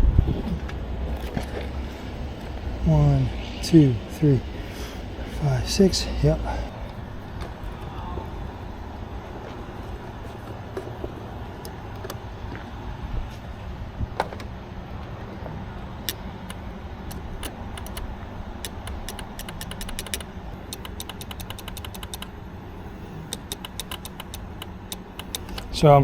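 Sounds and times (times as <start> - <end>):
steady low hum: 0.0 - 26.0
small metal parts clicking: 16.1 - 22.3, 23.3 - 25.7.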